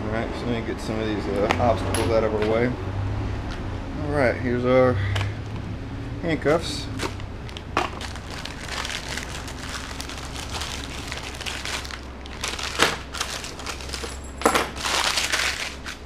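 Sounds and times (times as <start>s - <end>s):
handcuffs rustling and crinkling: 6.8s - 16.0s.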